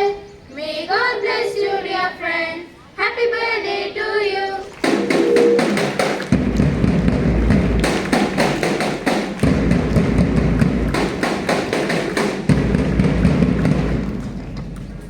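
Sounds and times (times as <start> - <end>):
children clapping: 4.6 - 15.0.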